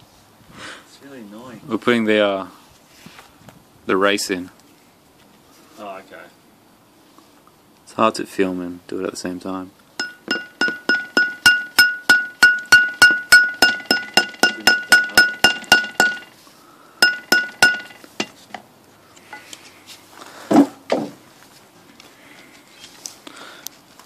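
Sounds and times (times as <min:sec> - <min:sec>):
hammer tapping metal: 0:10.0 - 0:16.4, 0:17.0 - 0:18.4.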